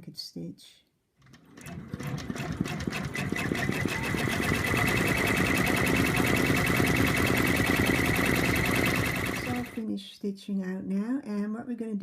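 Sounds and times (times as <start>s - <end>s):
embroidery machine stitching: 1.2s - 9.8s.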